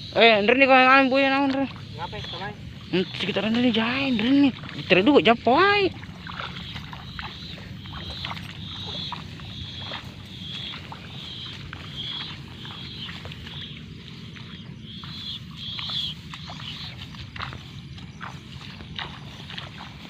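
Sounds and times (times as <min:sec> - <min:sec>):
steady low hum: 0:00.0 - 0:20.0
short high chirping call: 0:06.5 - 0:13.8, 0:14.9 - 0:17.0.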